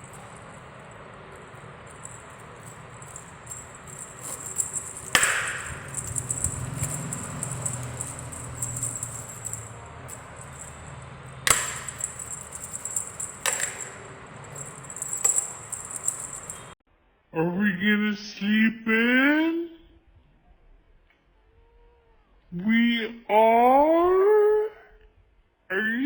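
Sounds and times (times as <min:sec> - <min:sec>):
faint low hum: 0:00.0 - 0:18.1
sharp knocks with ringing tail: 0:03.9 - 0:09.7, 0:11.4 - 0:14.0.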